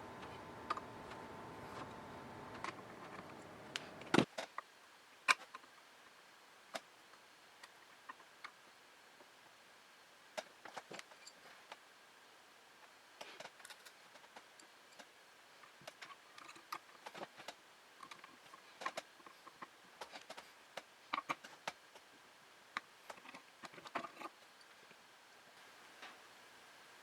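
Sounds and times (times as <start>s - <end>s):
computer parts clicking and tapping: 0.0s - 4.2s.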